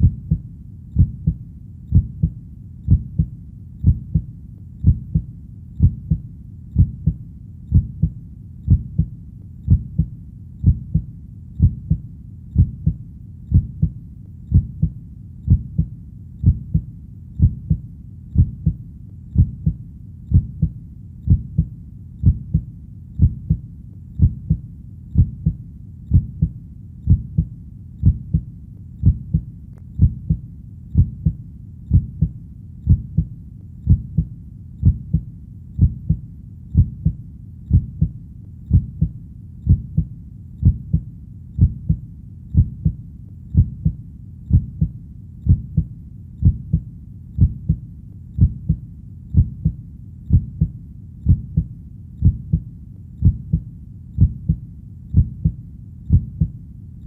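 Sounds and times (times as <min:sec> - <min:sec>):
heartbeat thudding: 0:00.0 - 0:00.4, 0:01.0 - 0:47.8, 0:48.4 - 0:56.6.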